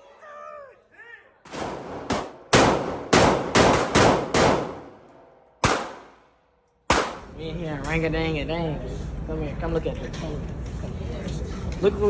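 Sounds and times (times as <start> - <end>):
gunshots: 1.5 - 6.3, 6.9 - 7.4.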